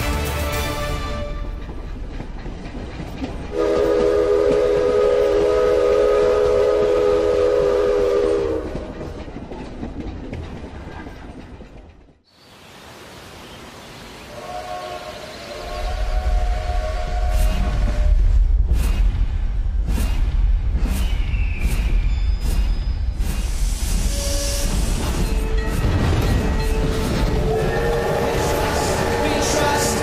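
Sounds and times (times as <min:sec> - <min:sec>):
train rumbling: 0:00.0 - 0:12.3, 0:14.2 - 0:30.0
train horn chord: 0:03.5 - 0:08.7, 0:14.3 - 0:17.7, 0:25.4 - 0:30.0.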